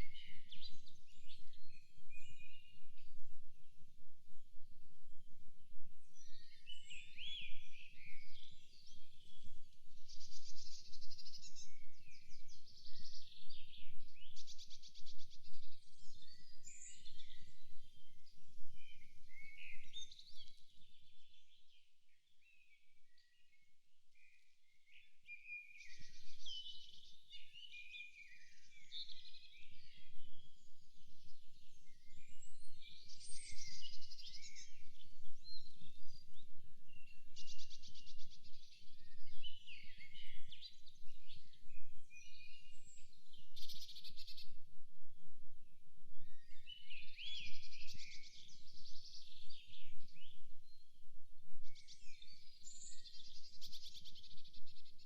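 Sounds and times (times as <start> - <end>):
birds singing: 24.2 - 44.6, 46.2 - 55.0.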